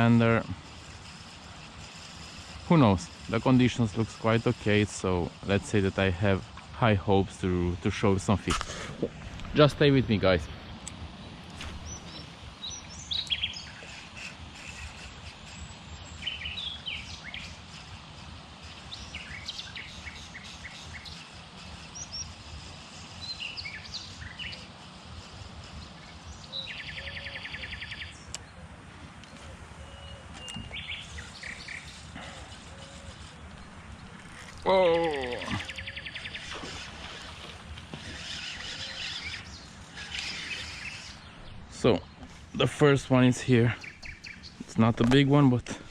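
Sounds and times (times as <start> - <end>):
bird rapid trill: 0.0 - 6.0, 11.6 - 28.3, 29.8 - 41.6
birds chirping: 0.0 - 45.9.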